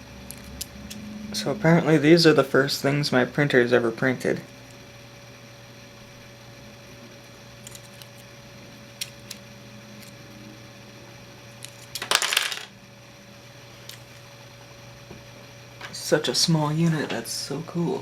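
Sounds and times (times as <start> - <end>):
plastic pieces clicking: 11.6 - 12.7
plastic pieces clattering: 11.7 - 12.7.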